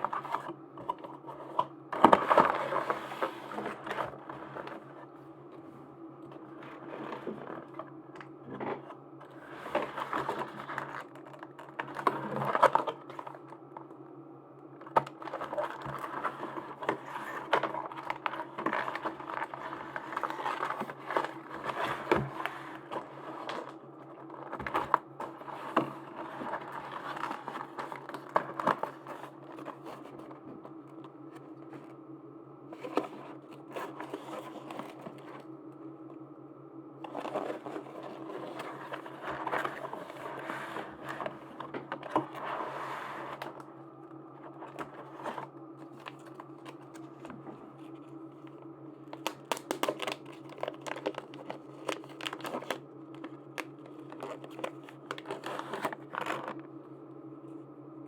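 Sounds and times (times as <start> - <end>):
steady low hum: 0.0 - 58.0
plastic packaging crinkling: 14.8 - 31.9, 44.4 - 56.6.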